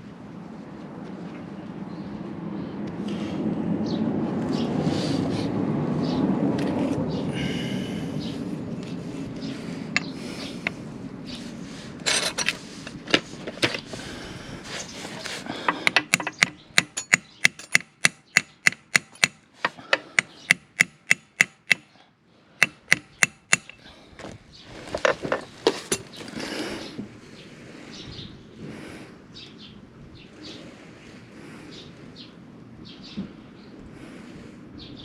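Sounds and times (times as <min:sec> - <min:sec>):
hammer striking metal socket: 0:15.8 - 0:19.4, 0:20.2 - 0:21.9, 0:22.6 - 0:23.8.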